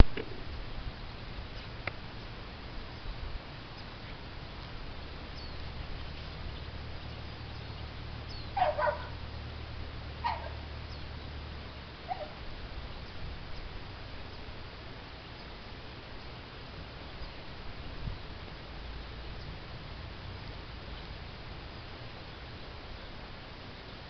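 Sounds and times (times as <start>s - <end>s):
steady low hum: 0.0s - 24.0s
animal calls gliding down in pitch: 8.6s - 9.1s.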